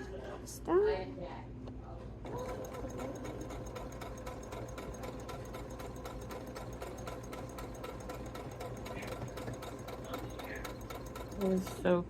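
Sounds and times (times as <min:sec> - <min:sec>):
sewing machine motor hum: 0:02.2 - 0:12.0
needle ticking: 0:02.3 - 0:11.8.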